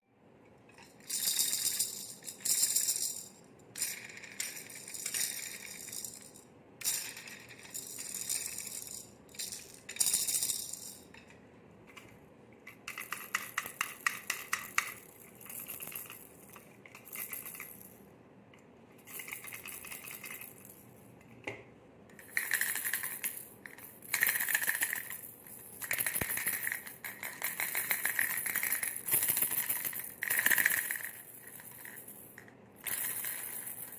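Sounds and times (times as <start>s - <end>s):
baby rattle shaking: 0.8s - 11.1s, 12.6s - 17.9s, 19.0s - 20.9s, 22.2s - 33.9s
rattle jingling: 1.0s - 6.3s.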